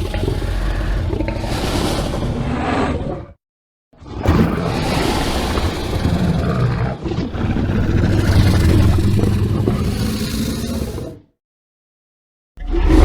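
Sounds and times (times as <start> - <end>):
deep dinosaur roar: 0.0 - 3.4, 4.0 - 11.3, 12.6 - 13.0.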